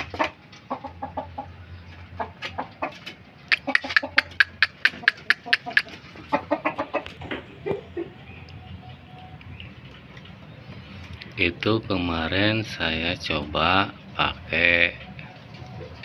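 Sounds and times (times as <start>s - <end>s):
rooster clucking: 0.0s - 11.2s.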